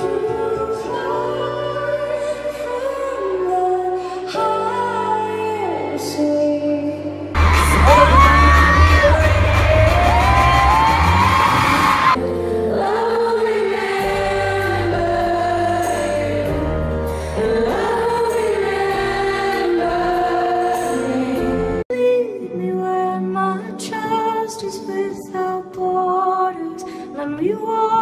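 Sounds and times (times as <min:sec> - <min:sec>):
bass line: 0:07.4 - 0:12.2
choir singing: 0:07.4 - 0:21.8.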